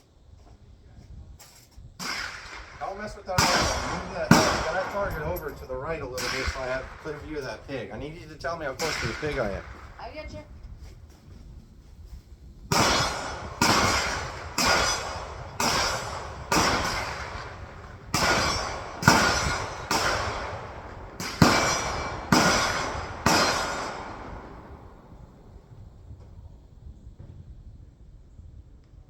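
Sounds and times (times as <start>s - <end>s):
rifle shots echoing: 2.0s - 10.4s, 12.7s - 25.4s.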